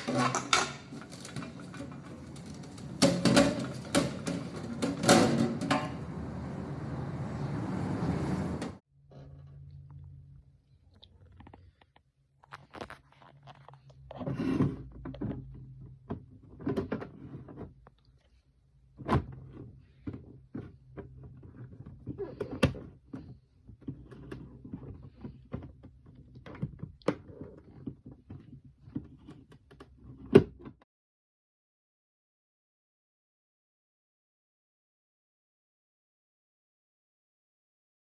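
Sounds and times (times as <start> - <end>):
plastic containers knocking: 0.0 - 6.1.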